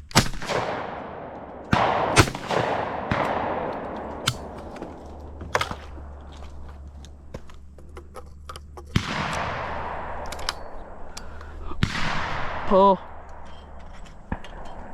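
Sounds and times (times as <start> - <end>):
shotgun shots with echo: 0.1 - 5.7, 8.9 - 10.9, 11.8 - 13.0.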